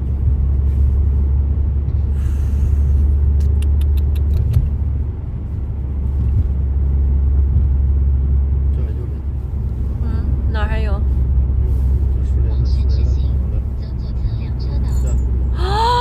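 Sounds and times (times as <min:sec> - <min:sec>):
car engine rumble: 0:00.0 - 0:16.0
tyres on road: 0:00.0 - 0:16.0.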